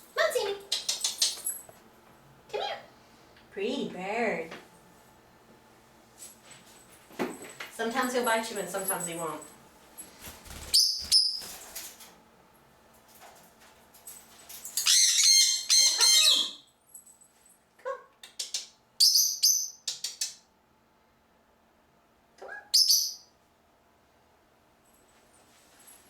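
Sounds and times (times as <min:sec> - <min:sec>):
birds squawking and chirping: 0:14.8 - 0:16.6.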